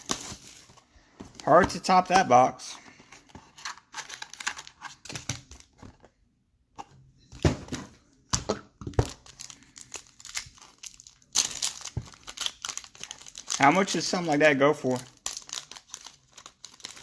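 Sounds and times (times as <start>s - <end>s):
packaging torn and crinkled: 9.1s - 17.0s.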